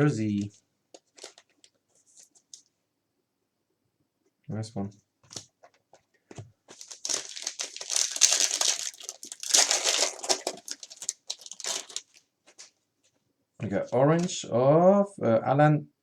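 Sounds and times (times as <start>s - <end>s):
cards rustling: 0.4s - 2.7s, 6.7s - 12.8s
foil wrapper tearing and crinkling: 6.8s - 12.2s.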